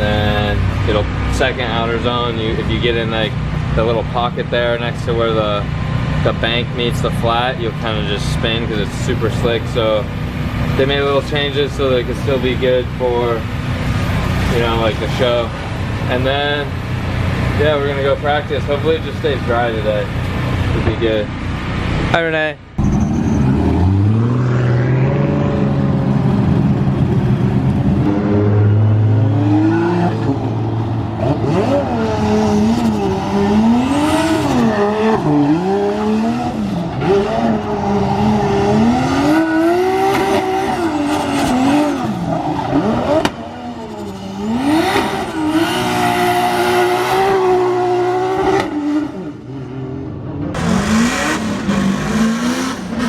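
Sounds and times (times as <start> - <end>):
car engine revving hard: 22.8 - 49.9, 50.5 - 53.0.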